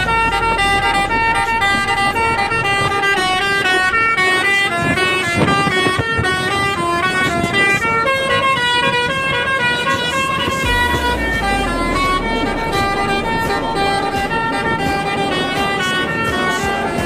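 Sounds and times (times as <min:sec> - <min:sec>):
low rumble: 0:00.0 - 0:04.5, 0:10.6 - 0:16.3
bus horn playing fast melody: 0:00.0 - 0:17.0.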